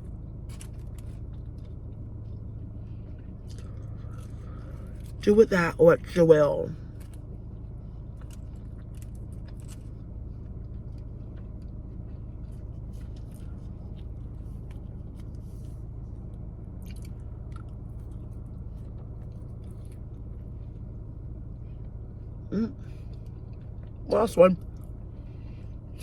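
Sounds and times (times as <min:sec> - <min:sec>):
low hum: 0:00.0 - 0:26.0
chewing mouth clicks and smacks: 0:00.5 - 0:05.2, 0:08.1 - 0:15.8, 0:16.8 - 0:20.9, 0:23.0 - 0:24.0.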